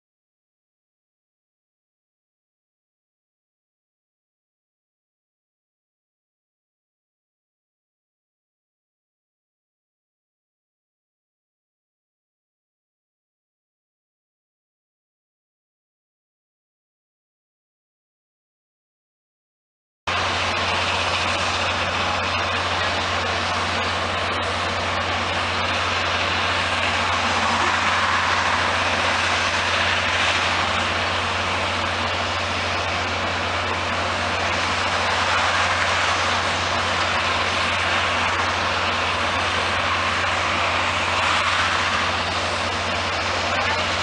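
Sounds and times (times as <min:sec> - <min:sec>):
large engine running: 0:20.1 - 0:44.0.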